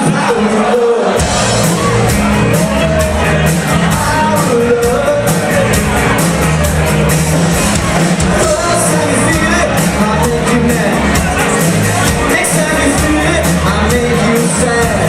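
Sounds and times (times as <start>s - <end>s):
rock band playing: 0.0s - 15.0s
steady drumbeat: 0.0s - 15.0s
person singing: 3.5s - 5.8s, 8.3s - 15.0s.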